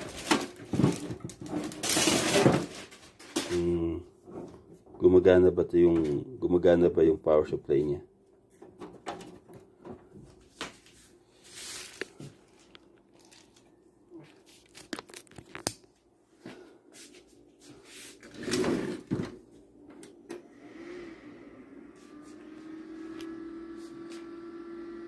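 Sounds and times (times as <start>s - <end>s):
rustling: 10.5s - 15.4s.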